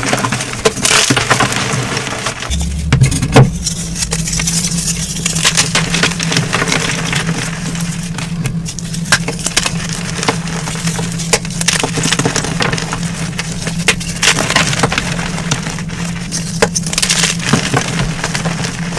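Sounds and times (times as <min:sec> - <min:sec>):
steady low hum: 0:02.5 - 0:18.9.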